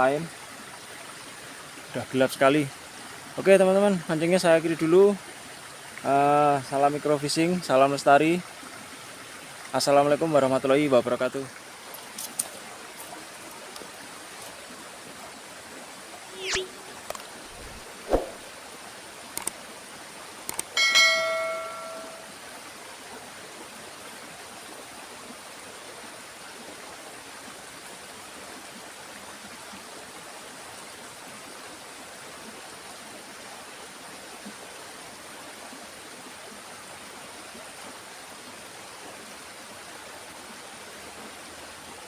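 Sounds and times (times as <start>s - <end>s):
light rain: 0.0s - 42.0s
running water: 0.0s - 42.0s
bell-like chime: 20.8s - 22.3s.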